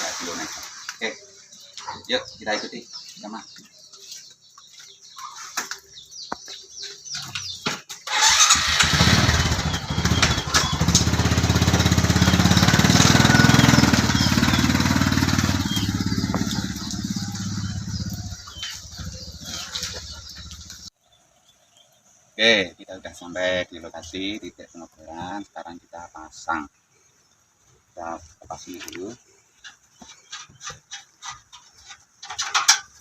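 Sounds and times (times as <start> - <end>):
motorcycle engine running: 8.1 - 20.9.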